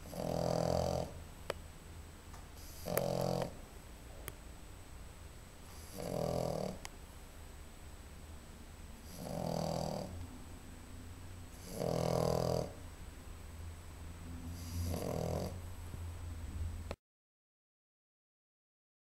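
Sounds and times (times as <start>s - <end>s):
dog snoring: 0.0s - 1.2s, 2.6s - 3.6s, 5.7s - 6.8s, 9.0s - 10.2s, 11.5s - 12.8s, 14.4s - 15.7s
low steady hum: 0.0s - 17.0s.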